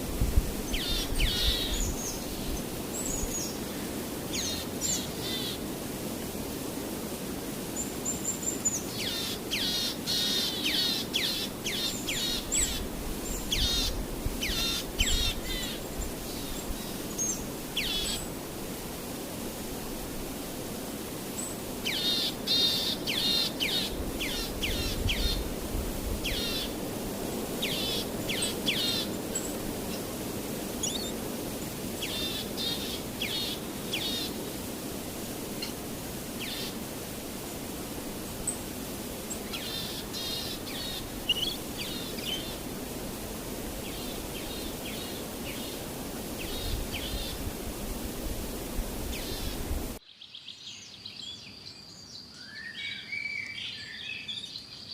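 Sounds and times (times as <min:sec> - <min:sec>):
small birds chirping: 0:00.7 - 0:05.6, 0:07.8 - 0:18.3, 0:21.3 - 0:25.5, 0:26.2 - 0:26.8, 0:27.6 - 0:30.1, 0:30.8 - 0:34.5, 0:36.4 - 0:36.8, 0:39.2 - 0:42.8, 0:43.8 - 0:45.8.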